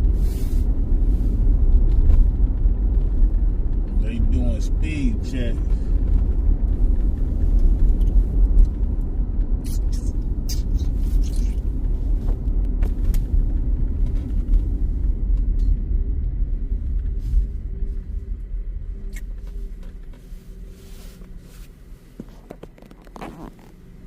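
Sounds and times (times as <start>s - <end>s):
car road and engine rumble: 0.0s - 24.0s.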